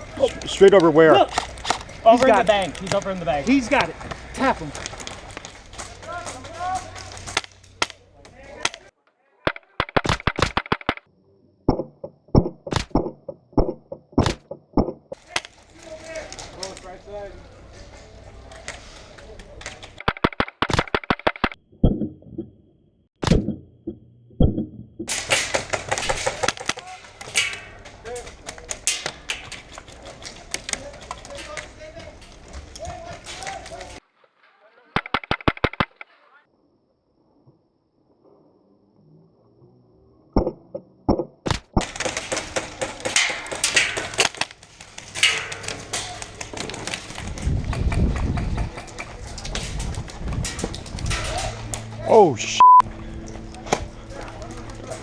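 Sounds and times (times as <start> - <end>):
sharp snaps and knocks: 2.6 - 8.9, 9.5 - 11.1, 11.7 - 16.8, 19.5 - 22.2, 23.2 - 34.0, 35.0 - 36.1, 40.4 - 51.9
low rumbling noise: 21.6 - 25.4
dull thumps: 23.2 - 26.8.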